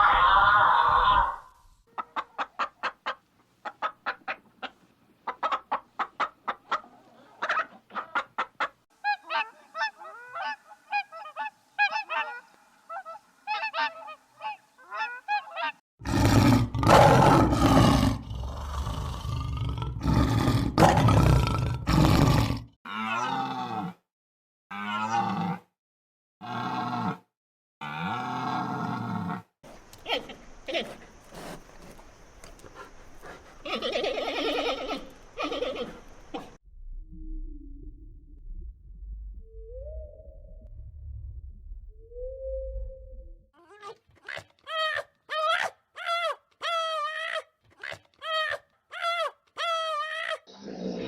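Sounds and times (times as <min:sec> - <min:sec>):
rapid clicking animal calls: 0:29.8 - 0:36.6, 0:43.9 - 0:50.4.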